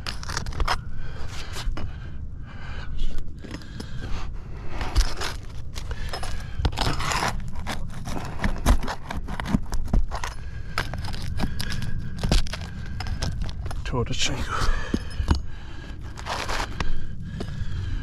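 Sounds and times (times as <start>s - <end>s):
roof shingles scraping and crackling: 0.0s - 0.8s, 4.8s - 13.9s.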